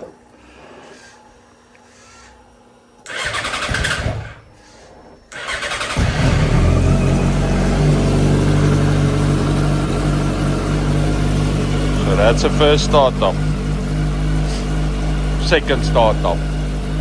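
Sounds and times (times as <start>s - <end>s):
starter motor cranking: 3.1s - 4.5s, 5.3s - 8.8s
motorcycle engine idling: 5.5s - 17.0s.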